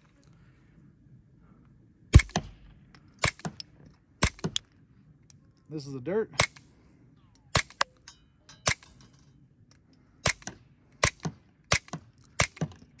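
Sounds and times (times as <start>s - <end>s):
suppressed pistol shots: 2.1s - 3.6s, 4.2s - 4.6s, 6.4s - 6.7s, 7.5s - 7.9s, 10.2s - 12.8s.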